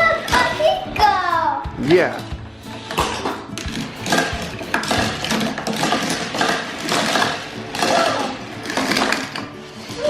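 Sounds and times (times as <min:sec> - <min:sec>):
toy cars rattling down plastic track: 0:03.6 - 0:10.0.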